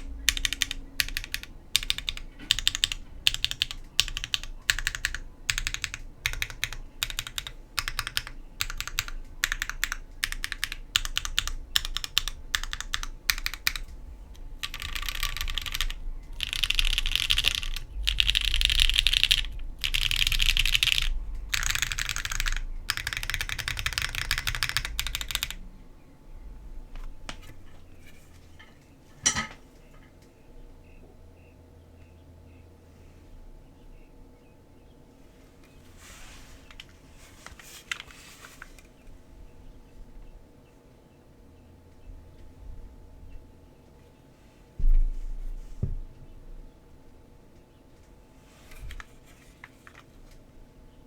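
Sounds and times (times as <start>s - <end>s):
mechanical keyboard typing: 0.0s - 25.6s, 37.4s - 38.8s.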